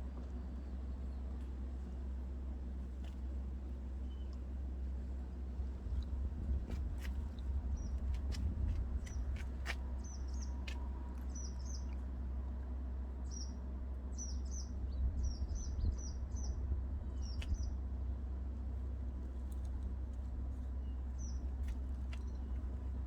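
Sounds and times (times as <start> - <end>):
steady low rumble: 0.0 - 23.0
small bird chirping: 11.3 - 12.0.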